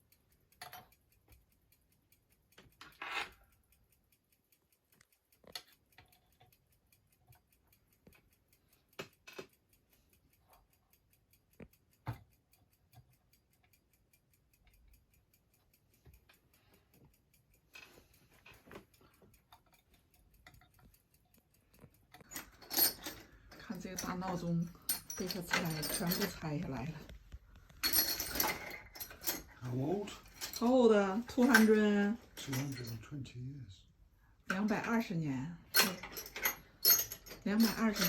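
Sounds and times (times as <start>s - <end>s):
clock ticking: 0.0s - 38.0s
clicks of clock parts handled: 2.5s - 3.7s, 7.9s - 10.7s, 15.9s - 33.2s, 35.6s - 38.0s.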